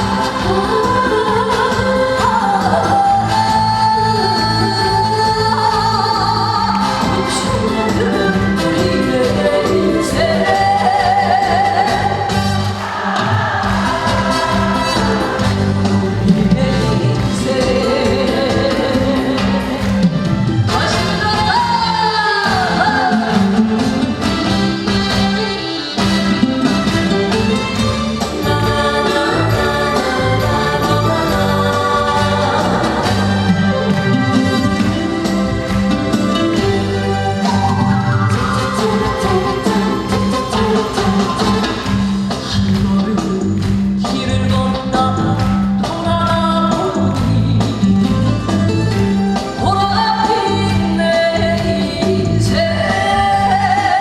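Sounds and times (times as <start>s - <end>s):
person singing: 0.0s - 20.1s, 28.2s - 35.5s, 36.4s - 48.4s
band playing with steady beat: 0.0s - 53.7s.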